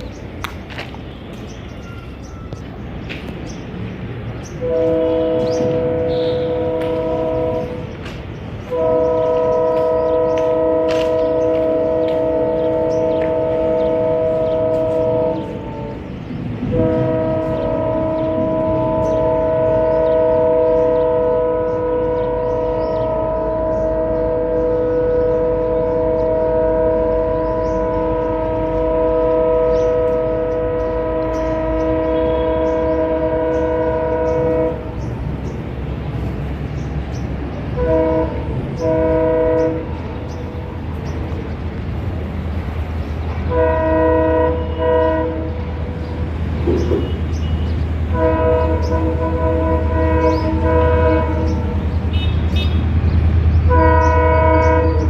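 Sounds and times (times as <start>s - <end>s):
low rumble of running train: 0.0s - 55.0s
locomotive horn blasts: 4.5s - 41.2s, 42.6s - 53.0s, 53.6s - 55.0s.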